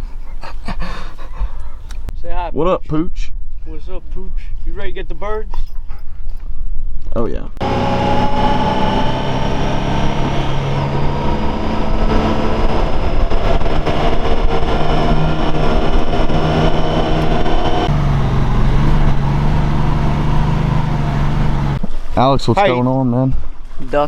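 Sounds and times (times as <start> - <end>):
motor droning: 7.6 - 21.8.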